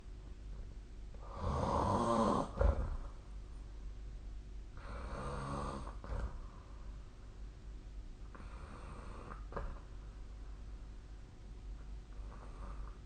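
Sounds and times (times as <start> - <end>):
person snoring: 1.2 - 3.0, 4.8 - 6.4, 8.3 - 9.6.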